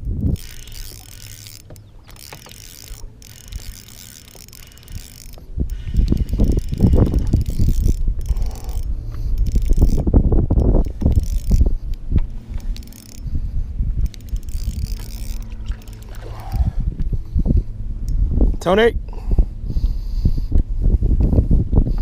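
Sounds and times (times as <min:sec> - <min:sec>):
fishing reel ratcheting clicks: 0:00.0 - 0:16.7.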